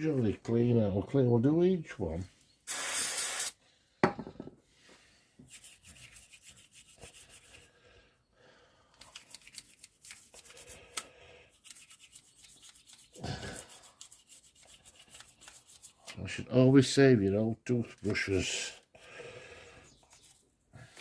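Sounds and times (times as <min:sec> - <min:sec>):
toothbrush scrubbing: 0:05.5 - 0:07.7, 0:09.0 - 0:16.2.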